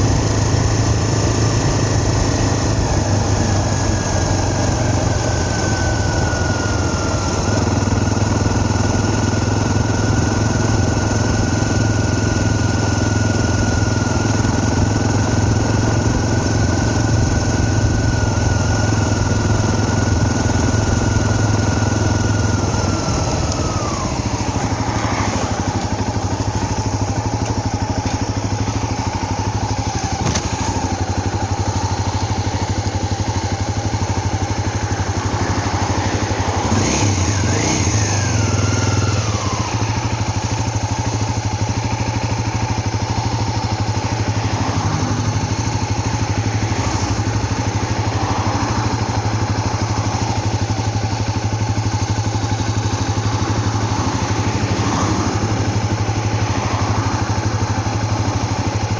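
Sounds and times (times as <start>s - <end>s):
motorcycle engine running: 0.0s - 58.9s.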